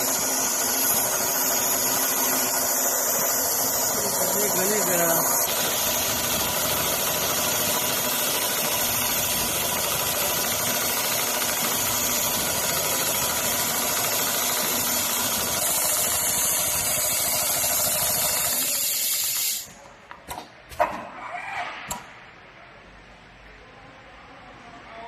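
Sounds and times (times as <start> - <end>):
sewing machine stitching: 0.0 - 19.6.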